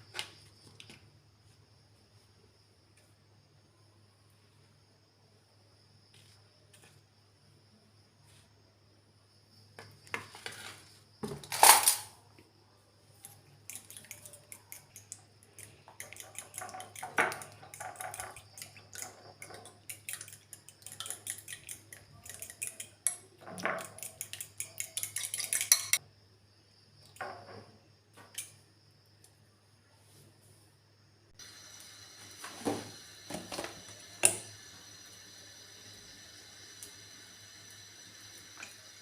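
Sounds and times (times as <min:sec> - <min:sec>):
metal utensils clattering: 0:11.4 - 0:12.1, 0:24.7 - 0:26.0
utensils scraping cookware: 0:21.0 - 0:26.0.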